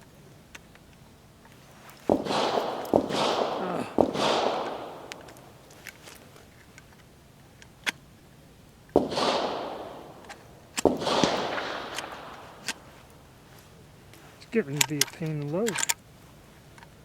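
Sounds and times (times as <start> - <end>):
rustling handling noise: 0.4 - 7.9, 9.9 - 17.0
shotgun shells clicking into magazine: 14.8 - 16.0.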